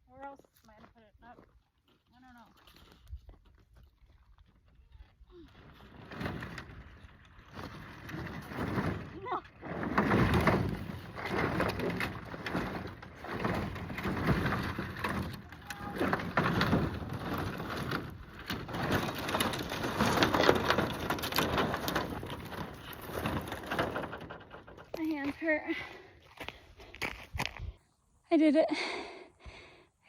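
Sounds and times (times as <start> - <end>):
footsteps crunching on gravel: 26.2 - 27.8.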